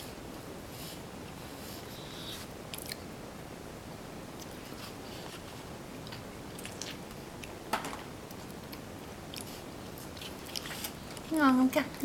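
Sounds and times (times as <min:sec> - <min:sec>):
child chewing: 0:02.7 - 0:03.1, 0:04.4 - 0:07.6, 0:08.2 - 0:11.3.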